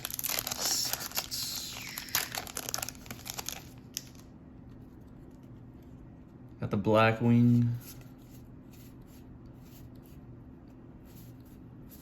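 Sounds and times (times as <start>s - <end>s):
foil wrapper crinkling and tearing: 0.0s - 4.3s.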